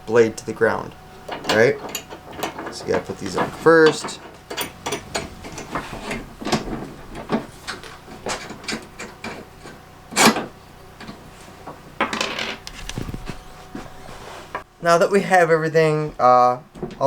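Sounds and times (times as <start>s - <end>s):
metal brackets clinking: 0.1s - 12.7s.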